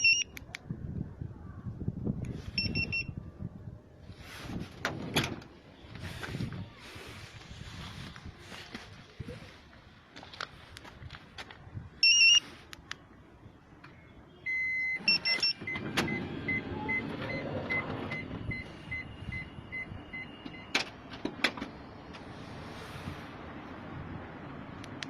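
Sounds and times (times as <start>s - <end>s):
car alarm beeping: 0.0s - 0.3s, 2.6s - 3.2s, 12.0s - 12.4s, 14.4s - 20.8s.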